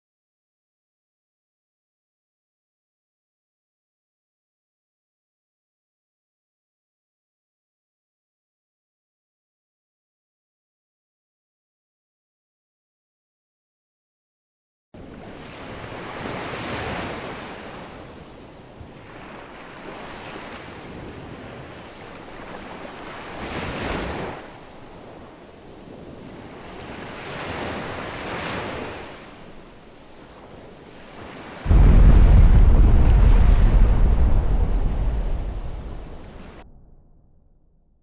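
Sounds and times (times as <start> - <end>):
ocean waves washing in: 15.0 - 37.2
loud deep rumble: 31.7 - 37.8.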